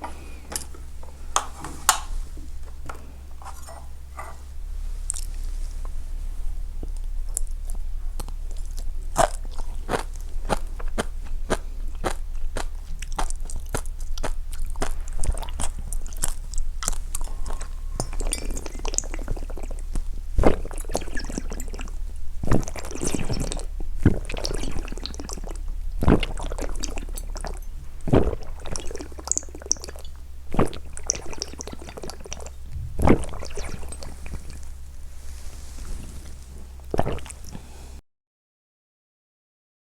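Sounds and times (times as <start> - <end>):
wet mouth clicks: 6.9 - 34.8, 36.8 - 37.7
gulping: 8.2 - 34.8, 36.8 - 37.7.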